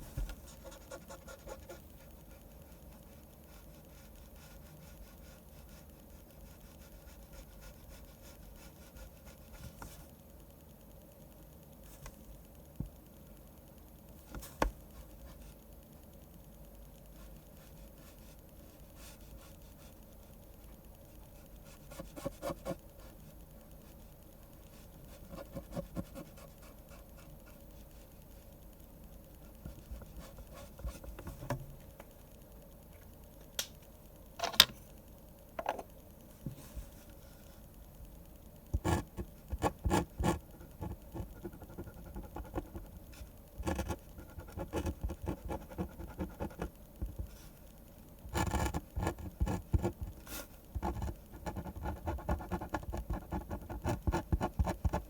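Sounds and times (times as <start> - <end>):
pen nib scratching paper: 0.4 - 9.7, 21.3 - 23.2, 24.7 - 28.1, 29.6 - 31.3, 38.7 - 47.4, 48.3 - 55.0.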